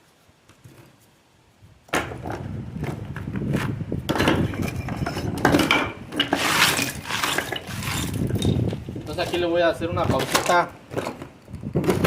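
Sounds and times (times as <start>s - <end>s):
metal tools scraping stone: 6.2s - 8.6s.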